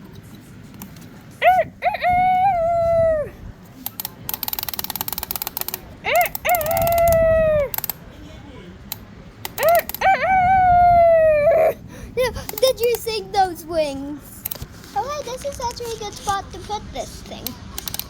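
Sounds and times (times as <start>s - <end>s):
rooster crowing: 1.4s - 3.4s, 6.0s - 7.8s, 9.6s - 11.8s
ratcheting clicks: 3.8s - 8.0s, 17.4s - 18.0s.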